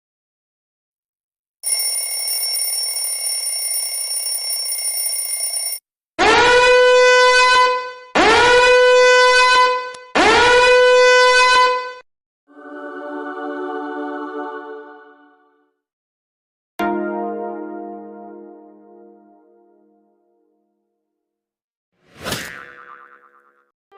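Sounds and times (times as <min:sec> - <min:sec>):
horn-like blasts rising in pitch: 0:06.2 - 0:12.0.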